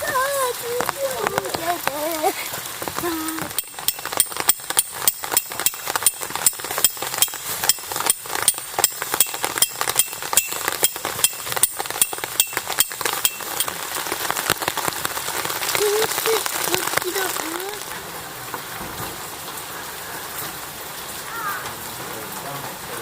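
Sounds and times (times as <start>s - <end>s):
hammer striking metal: 3.6s - 13.7s.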